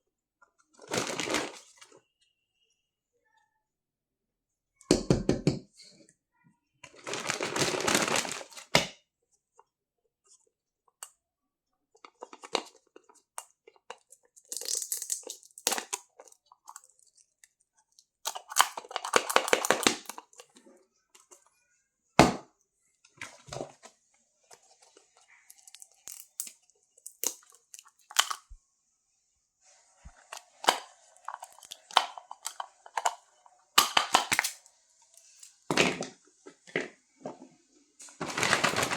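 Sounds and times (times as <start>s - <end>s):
plastic wrap crinkling and tearing: 0.8s - 1.9s, 6.9s - 8.9s, 13.9s - 20.5s, 25.4s - 28.5s, 30.2s - 33.2s, 33.8s - 35.5s, 38.0s - 38.9s
small objects clicking: 13.9s - 20.4s.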